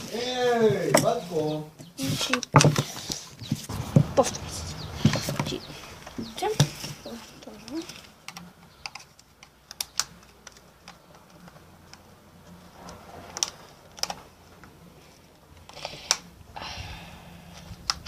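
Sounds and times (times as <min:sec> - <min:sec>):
small plastic parts clicking: 0:07.4 - 0:14.7, 0:17.6 - 0:18.0.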